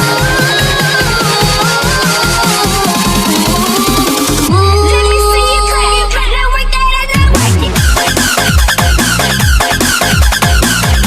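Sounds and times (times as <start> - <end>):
deep bass note: 3.0 - 8.9.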